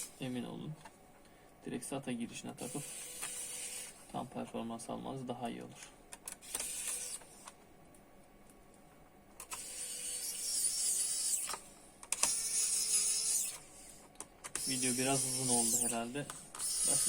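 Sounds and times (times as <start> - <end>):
small mechanical clicks: 6.2 - 7.6, 9.4 - 13.6, 14.4 - 17.0.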